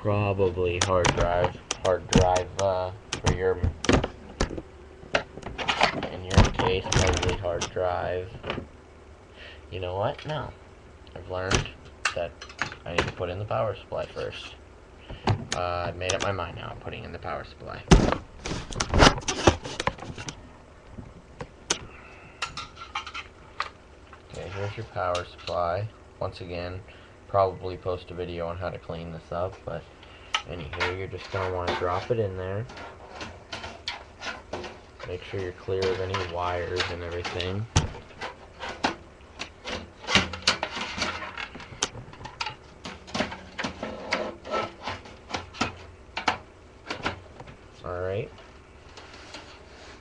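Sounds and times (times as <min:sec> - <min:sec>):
computer hardware clicks and knocks: 0:00.7 - 0:08.7, 0:11.5 - 0:13.3, 0:15.1 - 0:16.4, 0:30.4 - 0:47.6.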